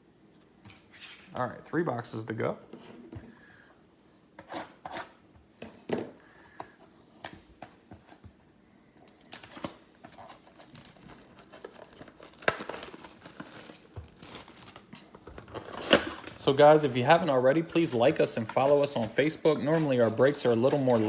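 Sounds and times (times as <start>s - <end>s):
plastic and foil wrapping crinkling: 9.0s - 21.0s.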